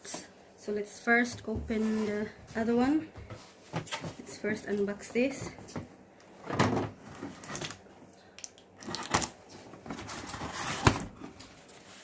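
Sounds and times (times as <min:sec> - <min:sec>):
cardboard rustling and scraping: 0:01.4 - 0:04.3, 0:09.5 - 0:12.0.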